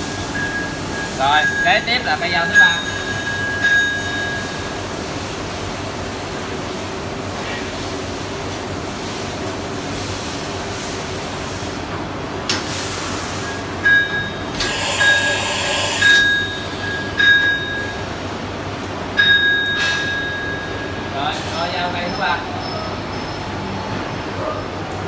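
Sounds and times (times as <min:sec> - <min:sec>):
machine hum: 0:14.4 - 0:17.2
short high-pitched tones: 0:14.5 - 0:18.0
air hiss: 0:14.6 - 0:16.5.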